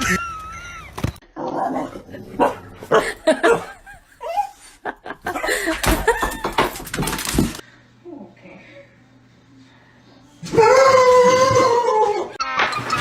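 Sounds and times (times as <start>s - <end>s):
people laughing: 0.0s - 1.0s, 2.9s - 6.7s.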